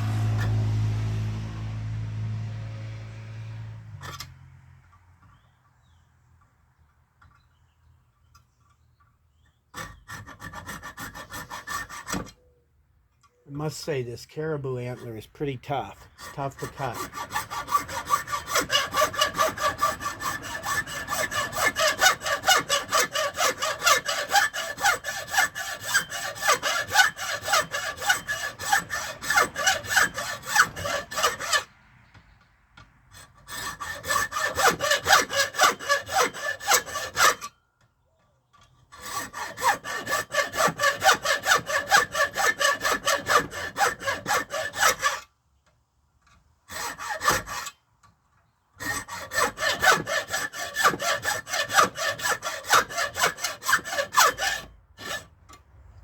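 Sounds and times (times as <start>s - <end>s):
hand saw cutting antler: 9.8s - 12.5s, 13.6s - 31.7s, 33.1s - 37.6s, 38.9s - 45.3s, 46.7s - 47.8s, 48.8s - 55.4s.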